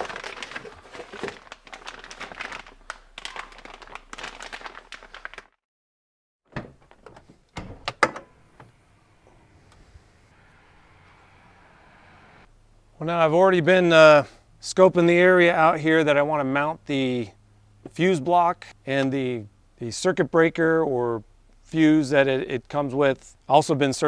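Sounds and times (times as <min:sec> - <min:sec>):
parts rustling and clicking: 0:06.5 - 0:08.8.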